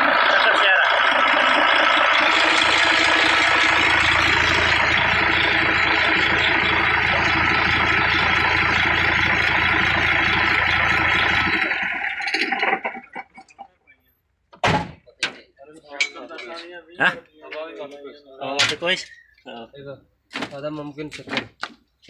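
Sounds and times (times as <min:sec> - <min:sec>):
diesel engine idling: 0:00.0 - 0:13.1.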